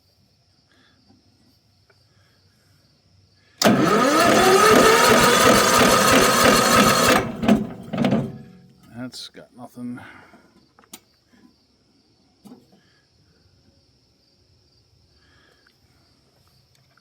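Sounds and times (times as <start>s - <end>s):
engine starter motor whirring: 3.6s - 8.7s.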